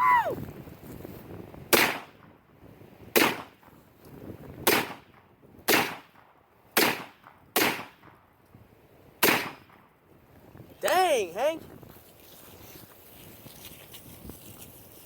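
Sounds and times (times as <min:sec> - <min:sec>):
rifle shots with echo: 0:04.6 - 0:05.1, 0:05.7 - 0:06.2, 0:06.8 - 0:08.2, 0:09.2 - 0:09.8.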